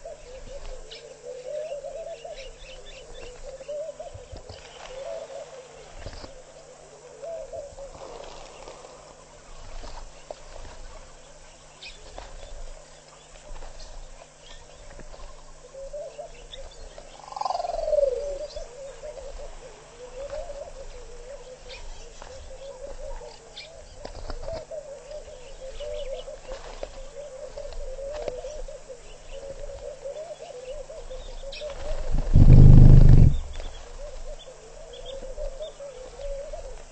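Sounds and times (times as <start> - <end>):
chorus of birds calling: 20.1 - 36.9
feathers rustling on microphone: 31.8 - 33.9
loud falling bird call: 32.1 - 33.7
loud low rumble: 32.1 - 33.7.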